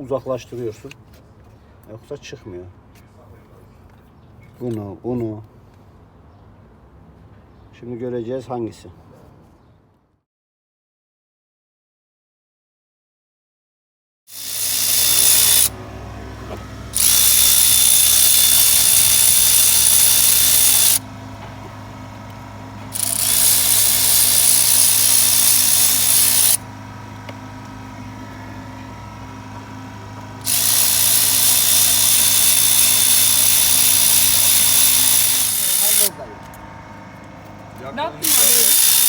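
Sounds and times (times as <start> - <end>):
power tool whining: 14.3 - 39.0.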